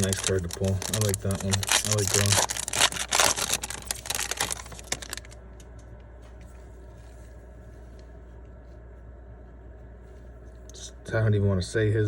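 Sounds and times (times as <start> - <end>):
card pack wrapper crinkling: 0.0 - 5.4.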